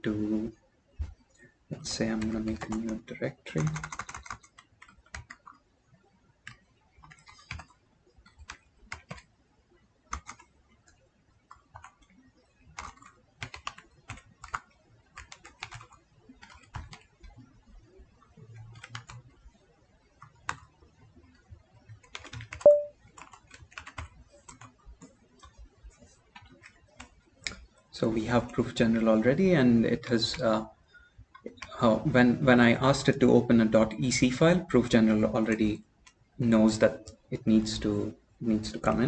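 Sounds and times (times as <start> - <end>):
typing on a computer keyboard: 2.2 - 5.6, 6.4 - 9.4, 10.1 - 17.4, 18.6 - 19.6, 20.2 - 20.7, 21.3 - 25.6, 26.3 - 27.8.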